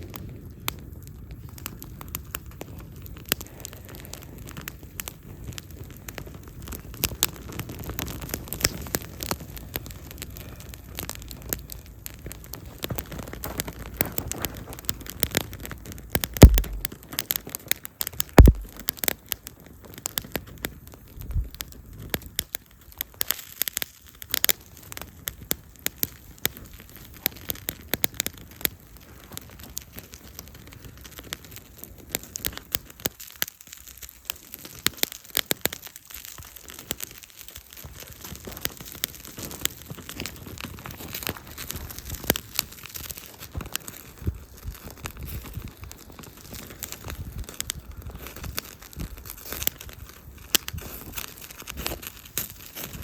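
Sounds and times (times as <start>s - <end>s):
campfire crackling and popping: 0.0s - 53.0s
loud low thumps: 16.4s - 16.9s, 18.4s - 18.8s.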